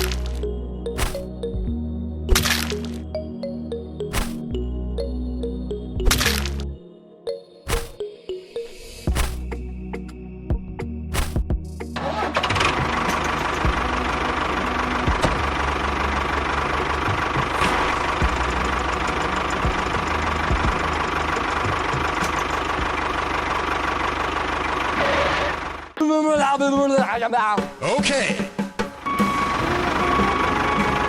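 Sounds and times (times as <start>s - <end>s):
small engine knocking: 12.4s - 25.9s.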